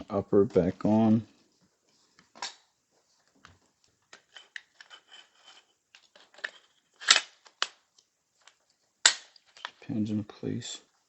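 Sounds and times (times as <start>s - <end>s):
rifle parts sliding metallic scrapes: 4.2s - 7.3s.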